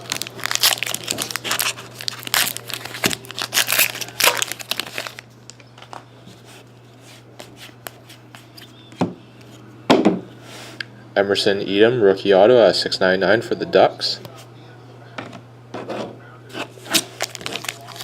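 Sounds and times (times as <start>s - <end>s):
foil wrapper crinkling: 0.0s - 6.0s, 16.8s - 18.0s
steady low hum: 0.0s - 18.0s.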